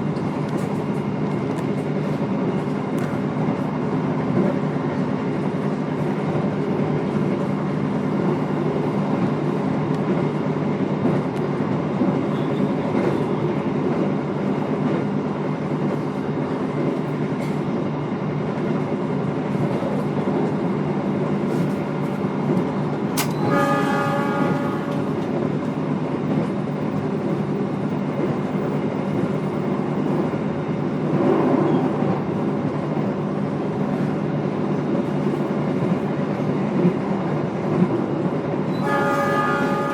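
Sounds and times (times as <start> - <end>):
train carriage running noise: 0.0 - 39.9
train horn: 23.3 - 25.4, 38.7 - 39.9.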